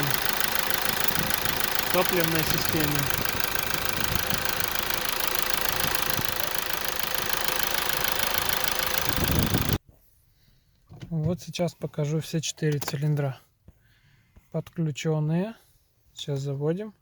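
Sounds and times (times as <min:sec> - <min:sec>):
diesel engine running: 0:00.0 - 0:09.8.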